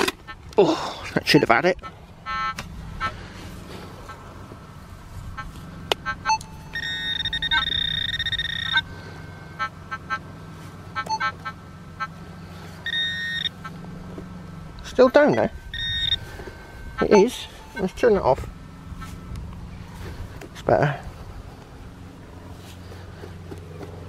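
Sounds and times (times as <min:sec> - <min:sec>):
metal detector beeps: 0:02.2 - 0:03.1, 0:05.4 - 0:10.2, 0:10.9 - 0:12.2, 0:12.8 - 0:13.7, 0:14.9 - 0:18.4
metal detector held tone: 0:05.4 - 0:10.2, 0:12.8 - 0:13.7, 0:15.0 - 0:18.4.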